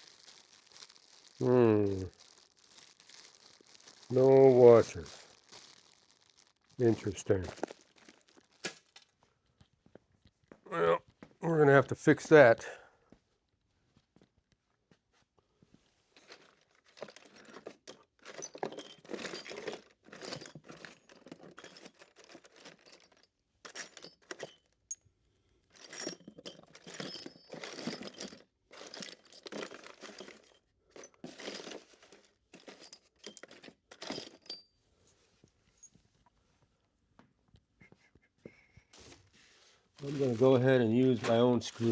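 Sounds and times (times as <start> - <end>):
metal screws rattling and clinking: 16.2 - 25.0, 25.7 - 34.7.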